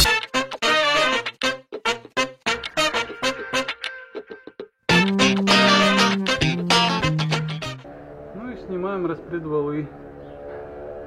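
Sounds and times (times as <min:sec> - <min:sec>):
background music: 0:00.0 - 0:08.6.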